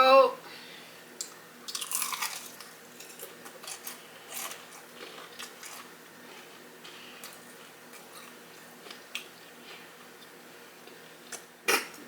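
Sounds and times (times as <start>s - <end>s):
chewing crispy chicken: 1.6s - 11.4s.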